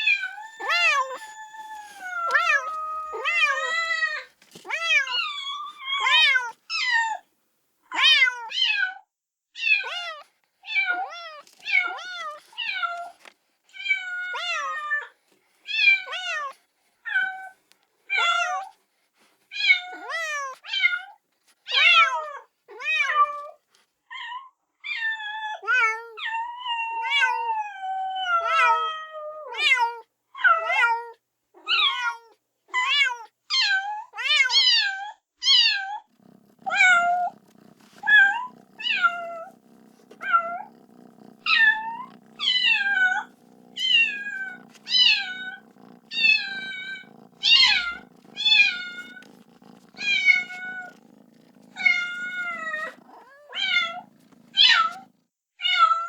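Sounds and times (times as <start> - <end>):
kitten meowing: 0.0 - 7.2, 35.5 - 55.1.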